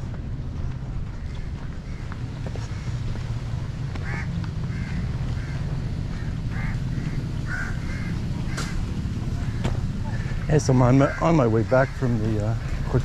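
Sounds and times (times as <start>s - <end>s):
steady low rumble: 0.0s - 13.0s
bird calling: 4.0s - 13.0s.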